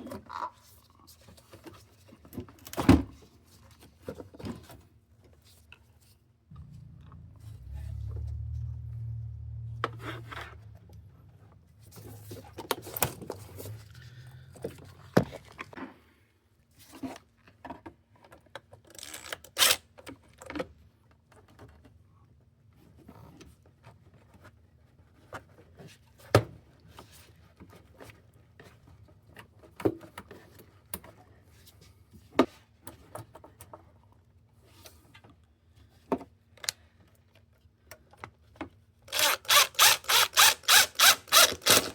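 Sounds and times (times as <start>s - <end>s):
low rumble: 6.5s - 11.8s.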